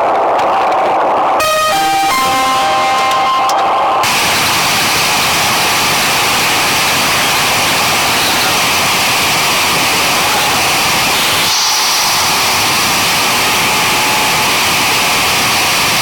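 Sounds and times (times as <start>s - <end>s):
loud steady rushing noise: 0.0s - 16.0s
guitar music: 1.4s - 4.1s.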